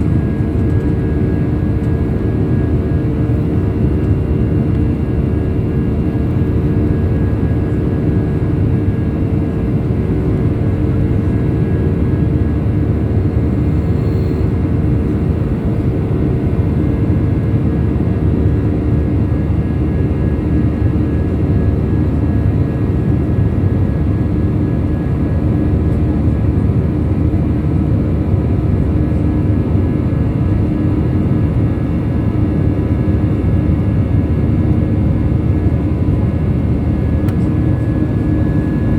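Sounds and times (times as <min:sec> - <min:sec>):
jet engine and airflow rush: 0:00.0 - 0:27.2, 0:31.2 - 0:38.9
constant low hum: 0:00.0 - 0:38.9.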